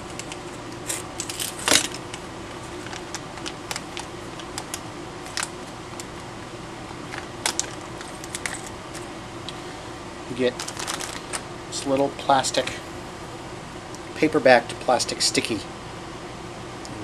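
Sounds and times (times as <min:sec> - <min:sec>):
plastic parts clicking and rustling: 0:00.0 - 0:02.2, 0:02.8 - 0:06.1, 0:07.1 - 0:09.1, 0:10.6 - 0:11.4
low background hum: 0:00.0 - 0:17.0.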